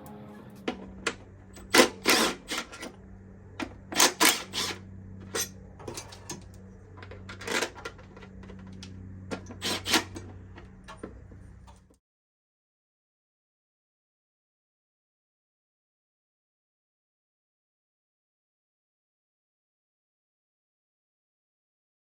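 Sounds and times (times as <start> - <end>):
low hum: 0.0 - 4.0.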